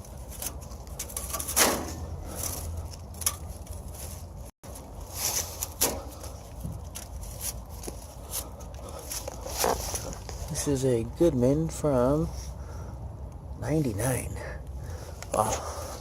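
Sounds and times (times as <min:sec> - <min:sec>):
knocks and scrapes: 0:00.0 - 0:10.6.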